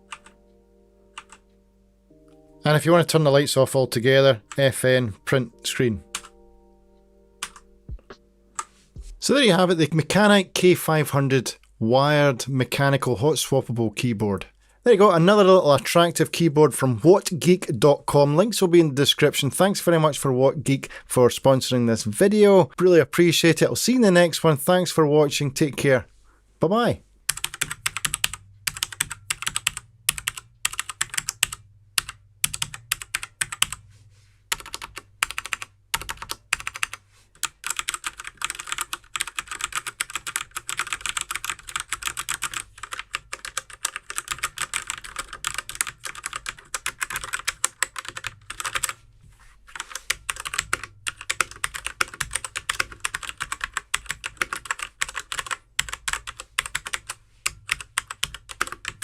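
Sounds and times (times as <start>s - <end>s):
mechanical keyboard typing: 0.1s - 0.4s, 1.2s - 1.4s, 6.1s - 6.3s, 7.4s - 7.6s, 27.3s - 33.8s, 34.5s - 49.0s, 49.7s - 59.0s.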